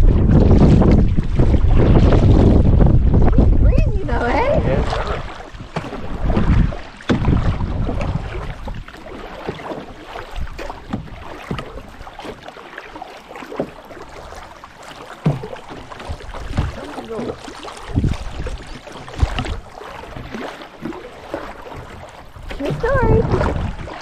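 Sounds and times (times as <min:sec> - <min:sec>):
wind buffeting microphone: 0:00.0 - 0:09.0, 0:10.2 - 0:12.0, 0:16.0 - 0:20.4, 0:21.7 - 0:24.0
canoe paddles splashing water: 0:00.0 - 0:24.0.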